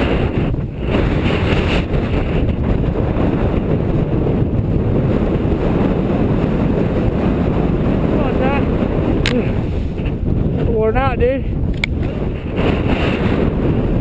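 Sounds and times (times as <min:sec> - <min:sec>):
wind buffeting microphone: 0:00.0 - 0:14.0.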